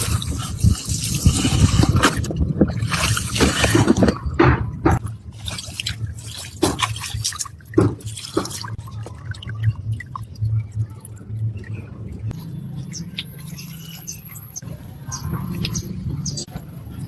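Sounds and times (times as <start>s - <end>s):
water splashing and dripping: 0.0s - 16.7s.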